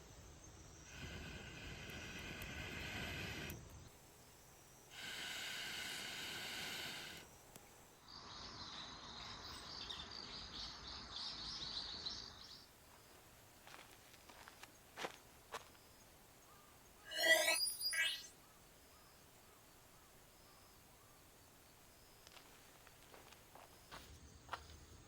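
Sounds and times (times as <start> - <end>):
faint insect buzzing: 0.6 - 8.1, 17.1 - 18.3
rapid high chirping: 17.1 - 18.3.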